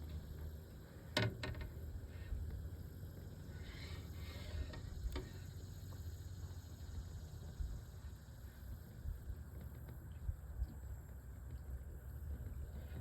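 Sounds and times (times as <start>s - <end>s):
low steady rumble: 0.0s - 13.0s.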